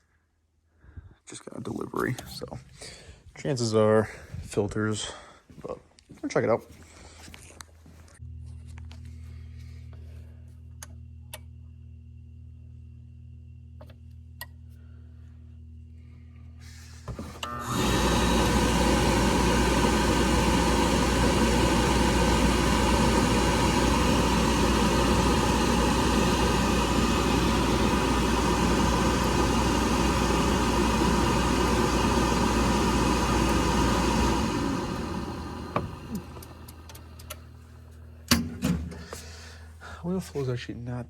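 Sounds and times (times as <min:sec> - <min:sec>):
oil burner motor and blower running: 0:15.5 - 0:40.2.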